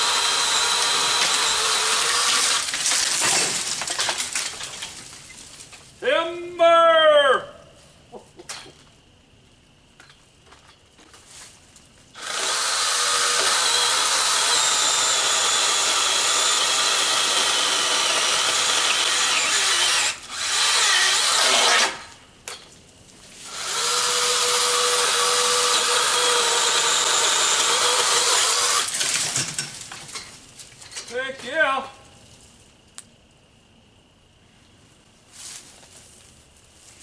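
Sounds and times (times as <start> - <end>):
electric chainsaw cutting wood: 0.0 - 2.8, 12.2 - 22.1, 23.5 - 29.2.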